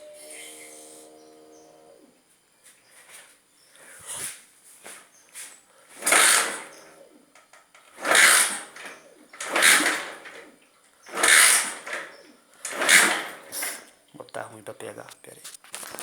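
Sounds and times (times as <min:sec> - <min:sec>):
motorcycle engine cranking: 0:05.9 - 0:13.9.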